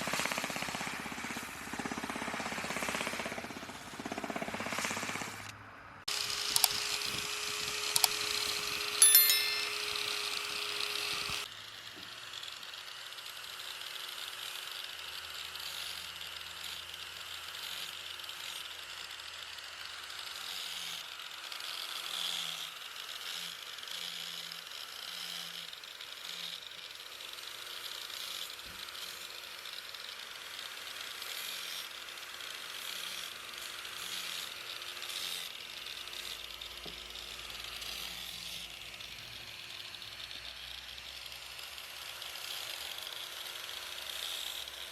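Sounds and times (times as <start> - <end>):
power tool rasping wood: 20.3 - 29.7, 30.3 - 44.9.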